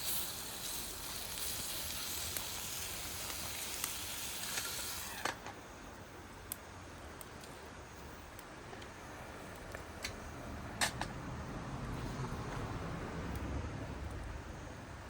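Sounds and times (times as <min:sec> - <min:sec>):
food sizzling in a frying pan: 0:00.0 - 0:05.4.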